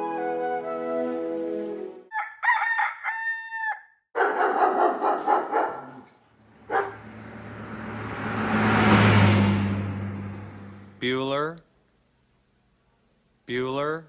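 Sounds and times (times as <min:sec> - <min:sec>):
rooster crowing: 0:02.1 - 0:04.9.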